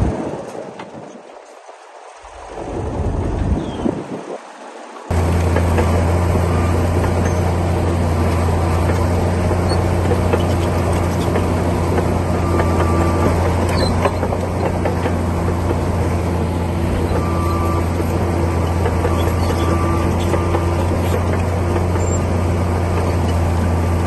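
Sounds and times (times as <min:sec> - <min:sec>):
bulldozer diesel engine humming: 0:05.1 - 0:24.0.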